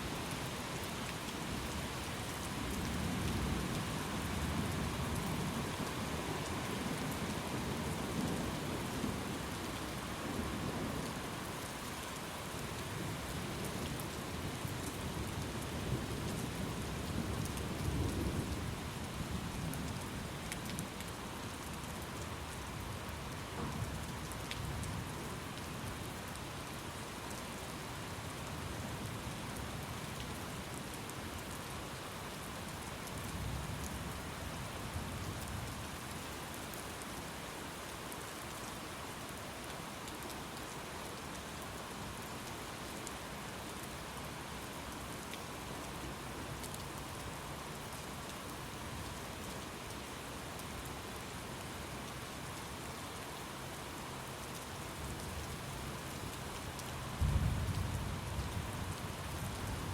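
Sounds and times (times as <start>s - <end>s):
steady rain hissing: 0.0s - 59.9s
low rolling thunder: 57.2s - 59.0s.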